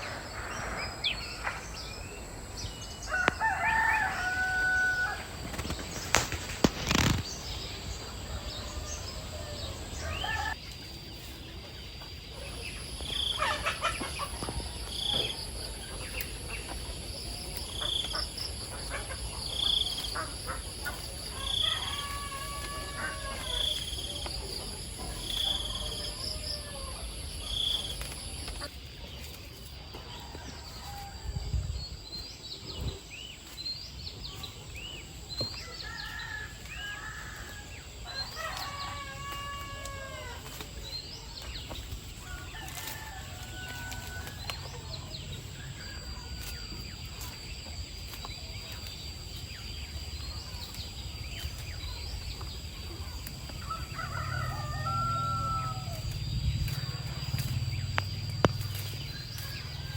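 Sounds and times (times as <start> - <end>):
insect drone: 0.0 - 34.1, 34.7 - 59.9
rooster crowing: 3.0 - 5.4, 8.4 - 10.6, 21.4 - 24.0, 35.8 - 40.4, 53.6 - 56.1
chickens clucking: 11.2 - 28.7.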